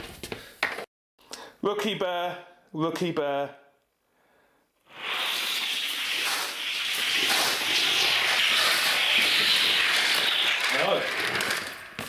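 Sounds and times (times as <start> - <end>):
toy cars rolling on plastic track: 6.3 - 12.0.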